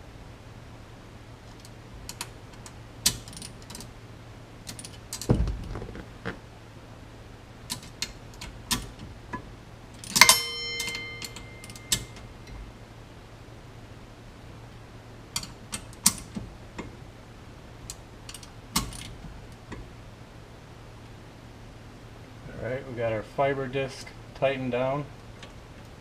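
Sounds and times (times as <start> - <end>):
ringing metal clink: 10.0 - 12.2
metallic clicks of screws and tool: 15.4 - 16.4.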